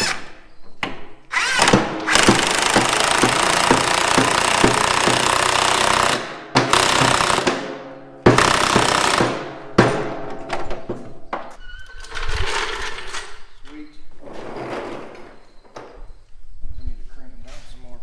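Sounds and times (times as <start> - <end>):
impact wrench hammering: 0.9 - 11.1.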